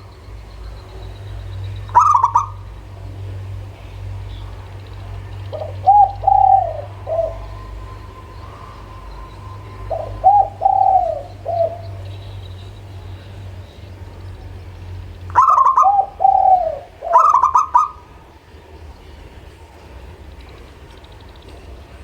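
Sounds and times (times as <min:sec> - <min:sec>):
low steady hum: 0:00.0 - 0:22.0
dove cooing: 0:00.6 - 0:14.6, 0:15.2 - 0:18.3.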